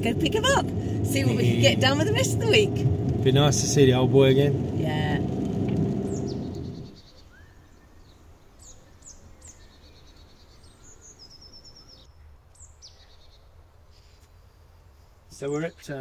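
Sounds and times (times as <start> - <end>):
faint low rumble: 0.0 - 7.0
birds chirping and trilling: 5.8 - 13.4.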